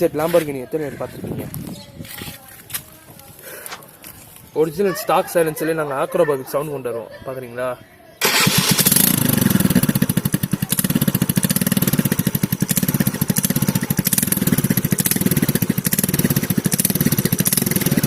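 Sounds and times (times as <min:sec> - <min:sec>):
scooter engine with rapid exhaust beat: 0:08.2 - 0:18.0.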